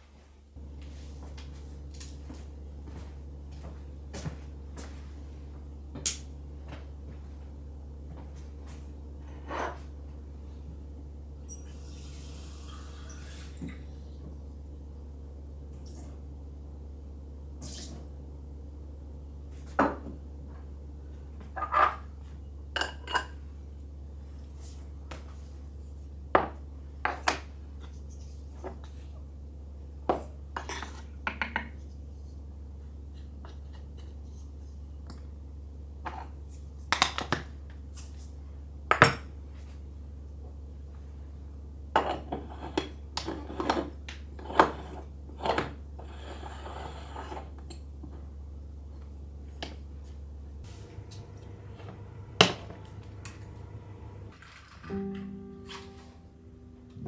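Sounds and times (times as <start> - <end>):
low hum: 50.5 - 57.0.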